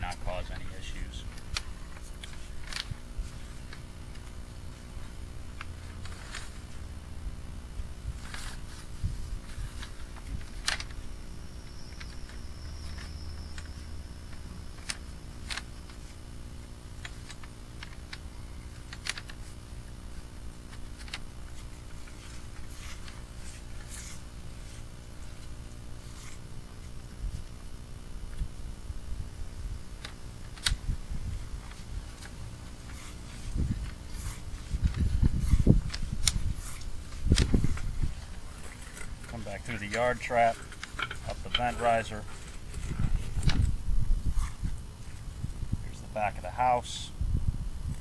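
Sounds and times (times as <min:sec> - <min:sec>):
steady low hum: 0:00.0 - 0:48.0.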